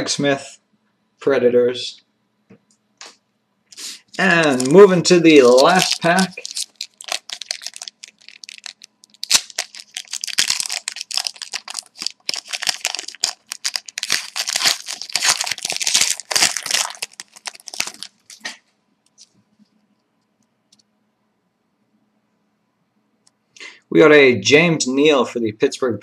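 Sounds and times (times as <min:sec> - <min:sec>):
wrapper tearing and crinkling: 0:04.0 - 0:18.5.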